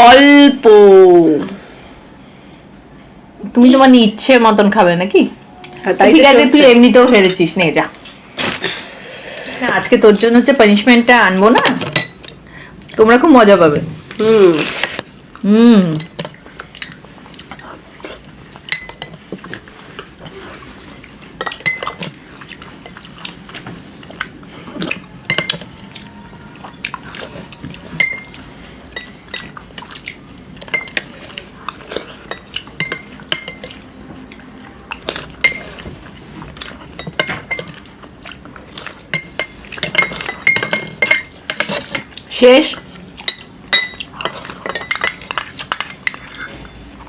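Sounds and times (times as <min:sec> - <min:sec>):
spoon clinking against dish: 0:21.4 - 0:22.0, 0:25.3 - 0:25.7, 0:28.0 - 0:29.5, 0:30.6 - 0:31.1, 0:32.3 - 0:33.8, 0:39.1 - 0:42.1, 0:43.3 - 0:46.4.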